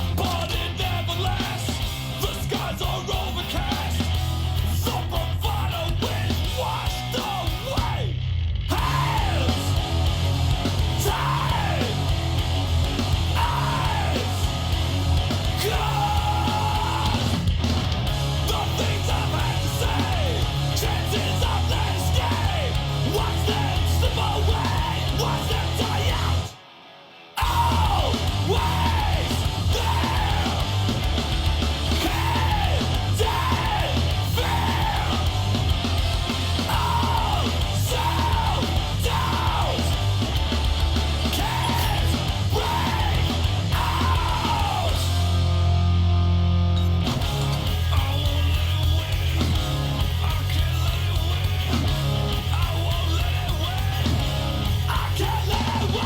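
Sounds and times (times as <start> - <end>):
yelled vocals: 0.0 - 26.7, 27.4 - 46.2, 46.8 - 56.0
heavy metal music: 0.0 - 56.0.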